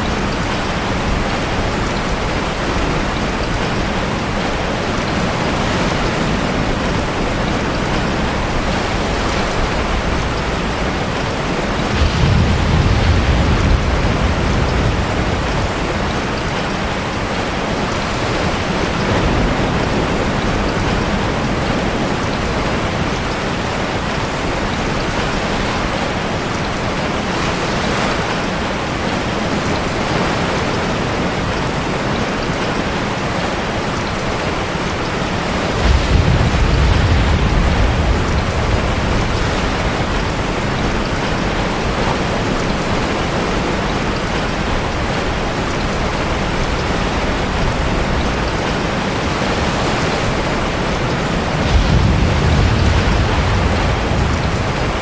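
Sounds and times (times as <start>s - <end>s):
heavy rain: 0.0s - 55.0s
ocean surf in a cave: 0.0s - 55.0s
deep low rumble: 8.2s - 16.2s.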